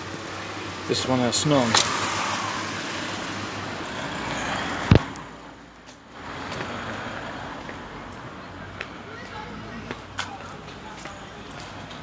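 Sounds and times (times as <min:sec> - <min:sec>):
road traffic passing: 0:00.0 - 0:12.0
loud sharp thump: 0:04.9 - 0:05.1.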